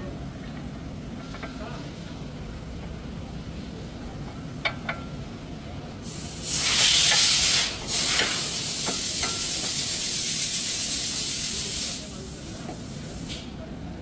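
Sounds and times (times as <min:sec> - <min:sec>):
aerosol spray hiss: 0:06.0 - 0:13.4.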